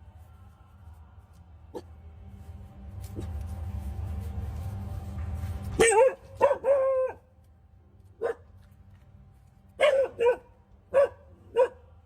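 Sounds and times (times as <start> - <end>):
dog barking: 5.8 - 7.2, 8.2 - 8.5, 9.8 - 11.9.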